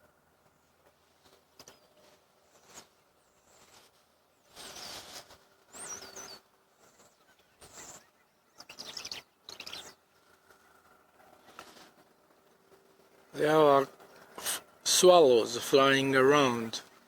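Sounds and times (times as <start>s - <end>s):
swallows twittering: 5.7s - 10.9s.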